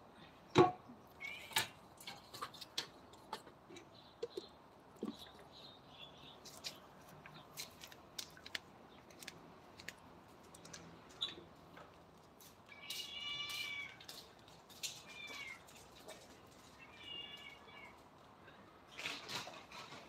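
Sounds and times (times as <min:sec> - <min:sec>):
cat meowing: 0:12.7 - 0:14.2, 0:15.0 - 0:15.8, 0:16.8 - 0:18.0.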